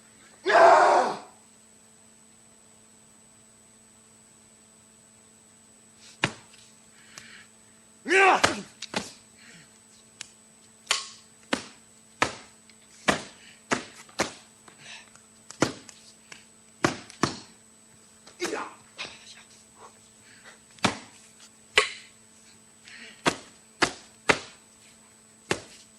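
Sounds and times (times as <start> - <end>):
tape hiss and hum: 0.0 - 25.9
person yelling: 0.4 - 1.4, 8.0 - 8.8, 18.4 - 18.8
sharp blows and slaps: 6.2 - 7.3, 8.1 - 9.2, 10.2 - 14.8, 15.5 - 17.6, 18.2 - 19.2, 20.8 - 22.1, 23.2 - 24.6, 25.4 - 25.9.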